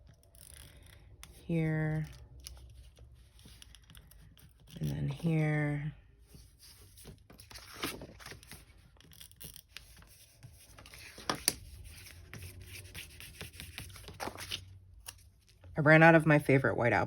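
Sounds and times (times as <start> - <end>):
paper scraping and rustling: 6.3 - 15.6.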